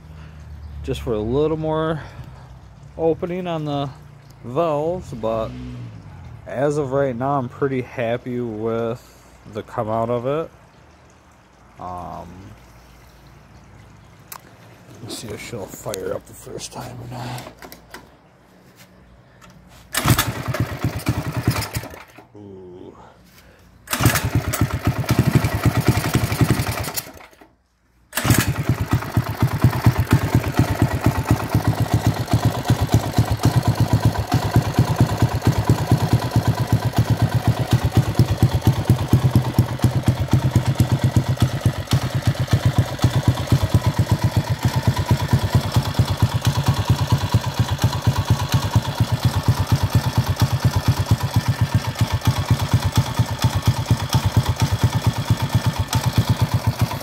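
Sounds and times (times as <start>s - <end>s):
small engine idling: 19.4s - 27.5s, 28.1s - 57.0s.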